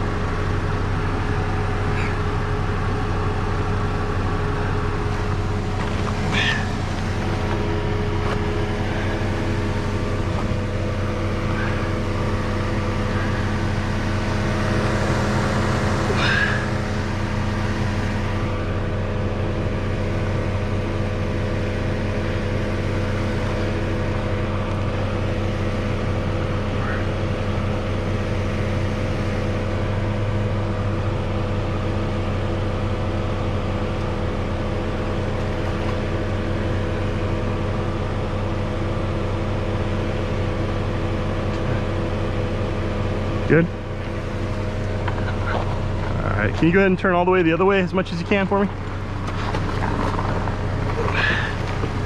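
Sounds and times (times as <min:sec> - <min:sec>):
vehicle engine idling: 0:00.0 - 0:52.0.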